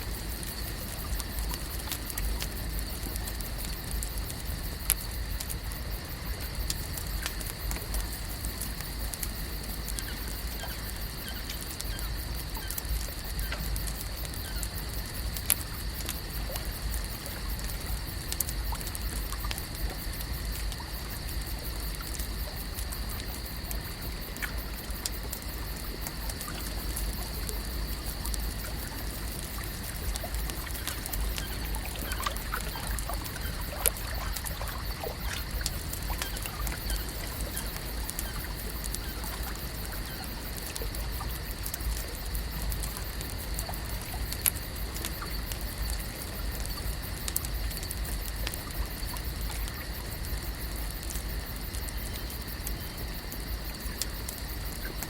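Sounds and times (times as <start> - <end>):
water lapping and trickling: 0.0 - 55.0.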